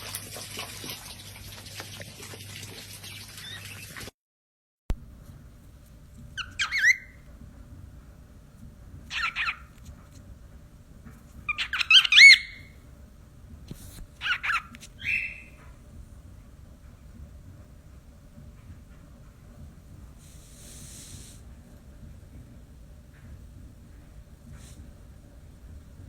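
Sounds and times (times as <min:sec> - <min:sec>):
parrot squawking and whistling: 0:06.4 - 0:07.2, 0:09.1 - 0:09.7, 0:11.5 - 0:12.7, 0:14.2 - 0:15.6.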